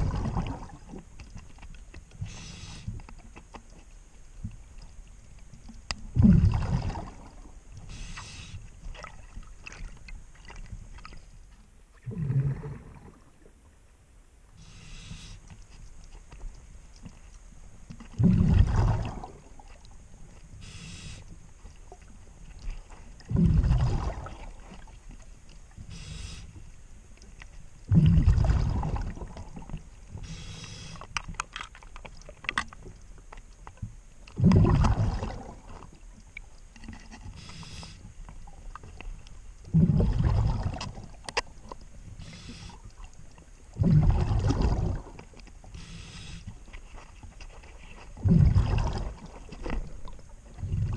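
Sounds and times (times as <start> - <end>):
exhaled bubbles gushing: 0.0 - 1.0, 6.1 - 7.5, 12.0 - 13.5, 18.2 - 19.7, 23.2 - 24.6, 27.9 - 29.7, 34.4 - 35.8, 39.7 - 41.2, 43.7 - 45.2, 48.2 - 50.9
regulator inhalation hiss: 2.2 - 2.9, 7.9 - 8.6, 14.6 - 15.5, 20.6 - 21.3, 25.9 - 26.6, 30.2 - 31.0, 37.4 - 38.1, 42.2 - 42.8, 45.8 - 46.5.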